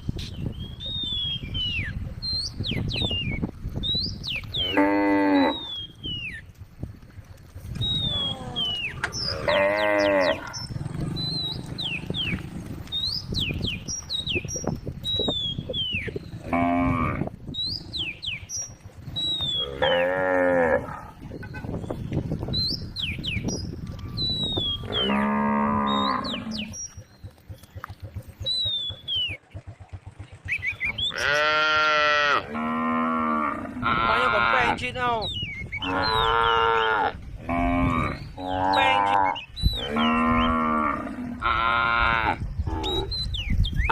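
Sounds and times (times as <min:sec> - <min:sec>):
cows mooing: 0:04.5 - 0:05.9, 0:08.0 - 0:12.9, 0:16.2 - 0:18.2, 0:19.4 - 0:21.3, 0:24.6 - 0:26.9, 0:31.0 - 0:34.8, 0:35.8 - 0:43.2.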